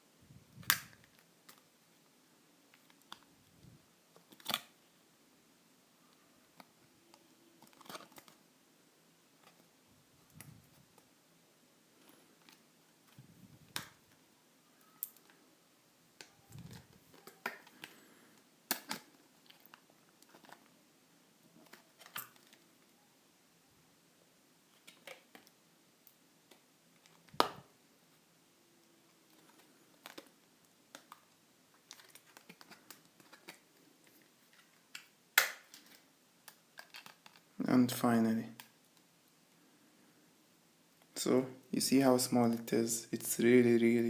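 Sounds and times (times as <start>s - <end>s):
plastic packaging rustling: 31.7s - 35.0s.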